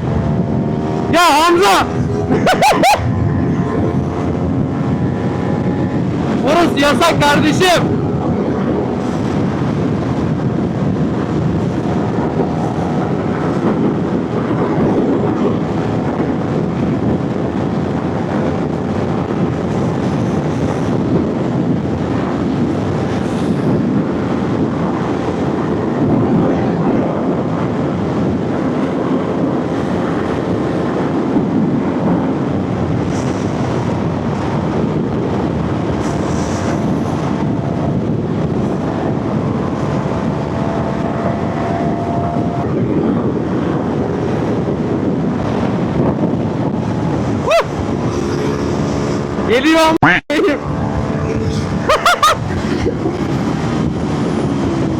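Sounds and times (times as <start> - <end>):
wind rush on microphone: 0.0 - 54.9
motorcycle engine running: 1.9 - 6.4.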